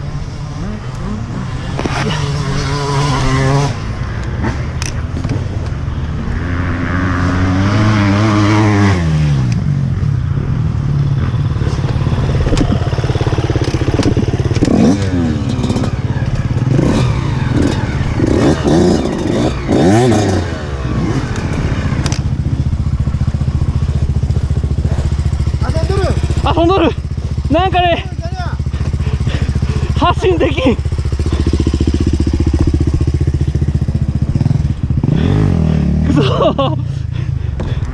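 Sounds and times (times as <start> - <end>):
motorcycle engine revving: 0.0 - 37.9.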